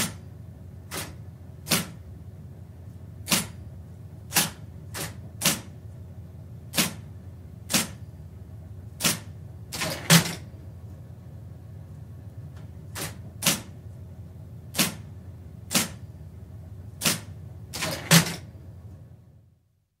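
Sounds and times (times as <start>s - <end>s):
typewriter motor hum: 0.8s - 2.0s, 3.2s - 3.6s, 4.3s - 5.8s, 6.7s - 8.0s, 8.9s - 10.5s, 12.8s - 13.8s, 14.7s - 16.1s, 16.9s - 18.5s
typewriter key strikes: 9.0s - 10.5s, 17.0s - 18.5s.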